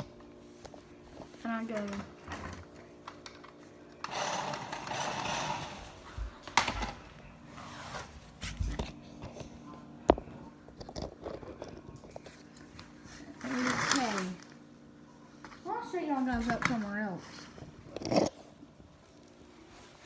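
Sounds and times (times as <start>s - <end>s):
toy car motor whirring: 4.0s - 6.0s.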